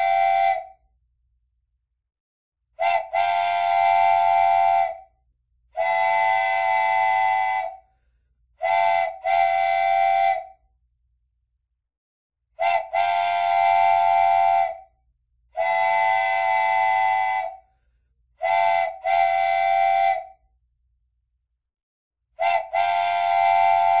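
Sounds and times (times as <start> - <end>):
toy train whistle blasts: 0.0 - 0.7, 2.8 - 5.0, 5.8 - 7.8, 8.6 - 10.5, 12.6 - 14.8, 15.6 - 17.6, 18.4 - 20.4, 22.4 - 24.0.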